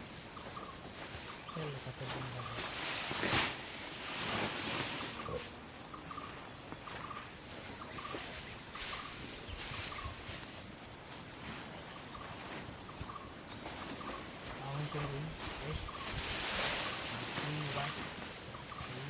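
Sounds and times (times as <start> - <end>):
faint chirps: 0.0 - 19.0
rice stalks swishing: 2.0 - 5.5, 13.7 - 19.0.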